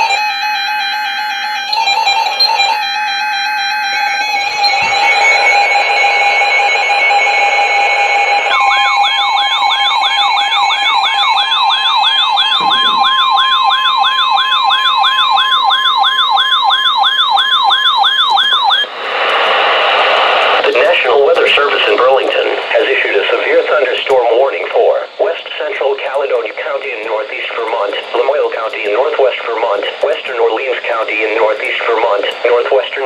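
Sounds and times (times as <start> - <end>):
sweeping siren-like alarm: 0.0 - 33.0
steady alert tone: 1.6 - 14.1.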